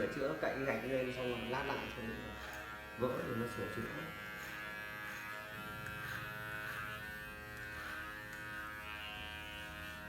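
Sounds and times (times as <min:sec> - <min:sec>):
electric hair clipper buzzing: 0:00.0 - 0:10.0.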